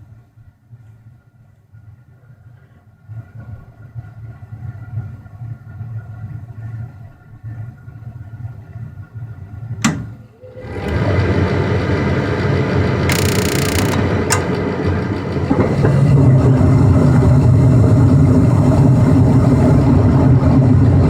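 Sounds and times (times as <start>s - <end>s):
gas burners roaring: 8.7s - 21.0s
furnace click: 9.8s - 10.2s, 13.1s - 14.6s.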